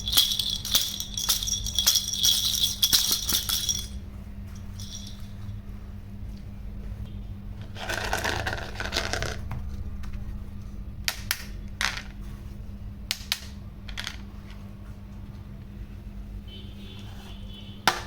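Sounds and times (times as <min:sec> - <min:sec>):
toys rattling: 0:00.0 - 0:04.0, 0:04.6 - 0:05.4, 0:07.6 - 0:09.5.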